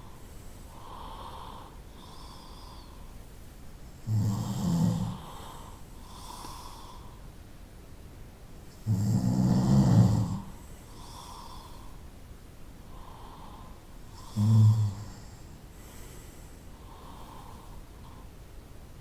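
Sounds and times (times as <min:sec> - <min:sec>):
faint soft breaths: 0:00.0 - 0:19.0
person snoring: 0:04.0 - 0:07.0, 0:08.8 - 0:11.8, 0:14.1 - 0:15.4.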